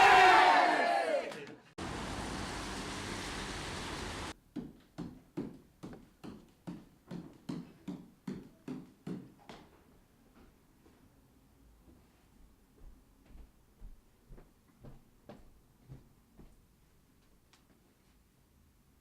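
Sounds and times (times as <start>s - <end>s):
steady hiss: 1.8s - 4.4s.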